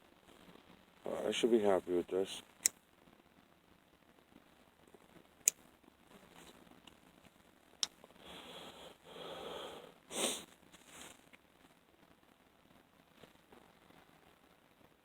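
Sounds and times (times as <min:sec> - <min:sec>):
person breathing and sniffing: 0:08.2 - 0:11.2.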